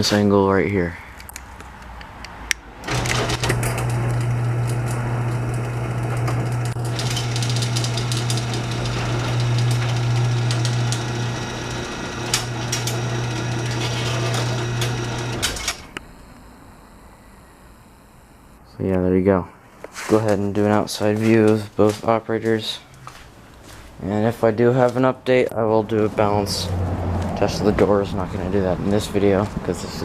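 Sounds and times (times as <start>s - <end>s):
garage door opener motor humming: 2.8s - 18.6s.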